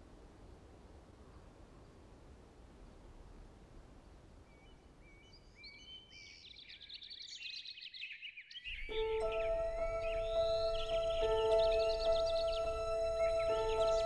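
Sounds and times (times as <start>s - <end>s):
faint outdoor noise: 0.0s - 14.0s
birds chirping and singing: 5.4s - 14.0s
sustained music notes: 8.7s - 14.0s.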